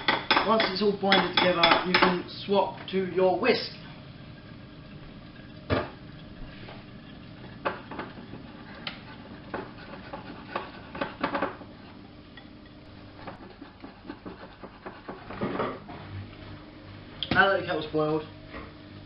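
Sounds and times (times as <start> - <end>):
utensil clinking against mixing bowl: 0.0 - 2.2.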